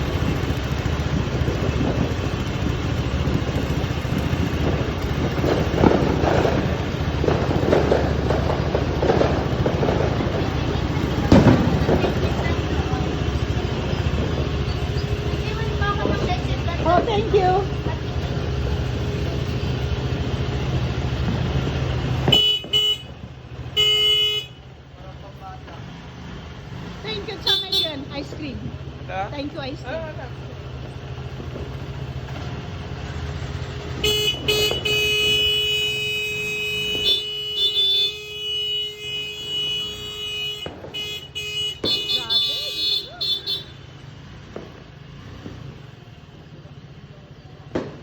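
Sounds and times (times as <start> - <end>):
engine idling: 0.0 - 48.0
vehicle and traffic rumble: 0.0 - 48.0
horn toots: 22.2 - 24.6, 33.9 - 43.9.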